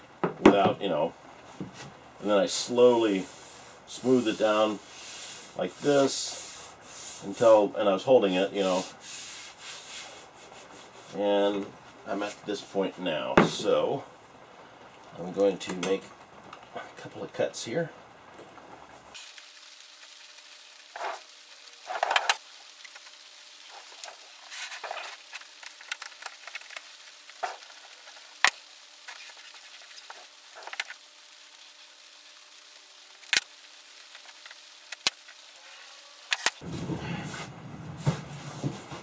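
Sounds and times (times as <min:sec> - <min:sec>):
handling bumps: 0:13.4 - 0:13.9, 0:36.6 - 0:39.0.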